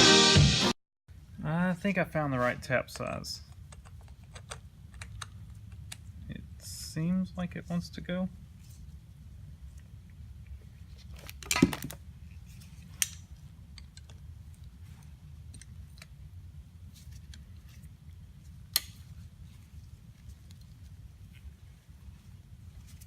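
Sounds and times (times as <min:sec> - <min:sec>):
steady low hum: 0:01.1 - 0:23.0.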